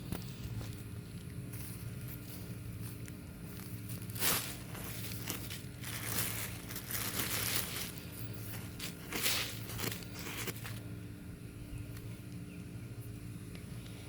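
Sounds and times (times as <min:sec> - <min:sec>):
soil rustling: 0:00.0 - 0:10.9
steady low hum: 0:00.0 - 0:14.0
plastic bag crinkling: 0:03.5 - 0:10.8.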